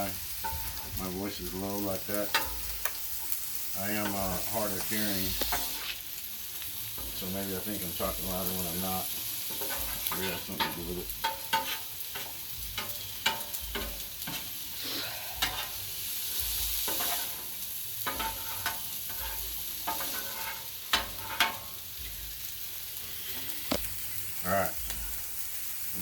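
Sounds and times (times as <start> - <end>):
rice sizzling on a griddle: 0.0 - 26.0
metal spatulas scraping griddle: 3.8 - 6.0, 9.4 - 21.8.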